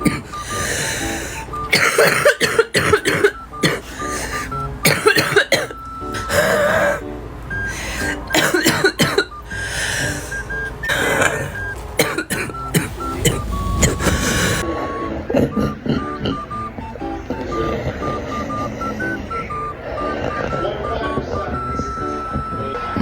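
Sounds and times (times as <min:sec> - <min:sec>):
throat clearing: 0:00.0 - 0:00.4, 0:01.7 - 0:07.0, 0:08.3 - 0:09.3, 0:10.9 - 0:14.5
woman coughing: 0:00.0 - 0:00.5, 0:01.7 - 0:07.0, 0:08.3 - 0:09.4, 0:10.9 - 0:14.6
background music: 0:00.0 - 0:23.0.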